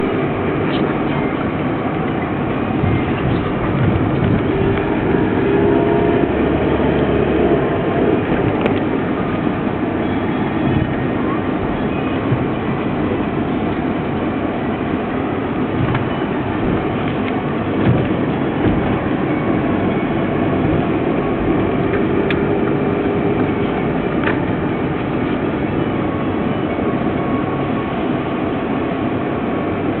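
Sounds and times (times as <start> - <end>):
vehicle road and engine noise: 0.0 - 30.0
knocks and rattles over bumps: 15.7 - 19.0.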